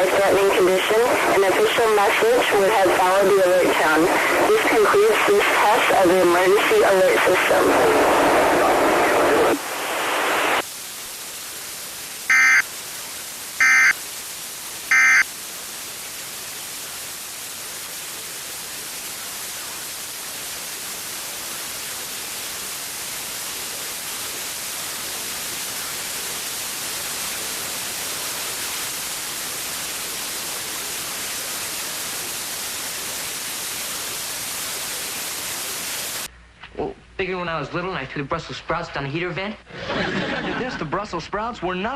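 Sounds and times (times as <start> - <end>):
steady static hiss: 0.0 - 41.9
buzzy digital data chirps: 12.3 - 12.6, 13.6 - 14.0, 14.9 - 15.2.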